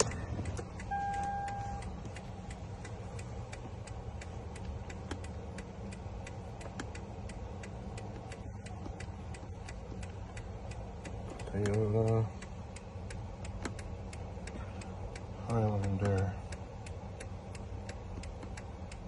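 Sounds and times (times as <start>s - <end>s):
light ticks: 0.0s - 19.0s
low steady hum: 0.0s - 19.0s
short electronic beep: 0.1s - 1.9s.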